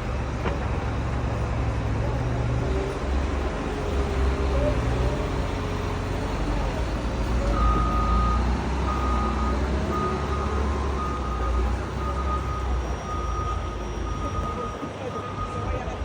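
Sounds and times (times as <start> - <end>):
low engine rumble: 0.0 - 16.0
reversing alarm beeping: 6.8 - 16.0.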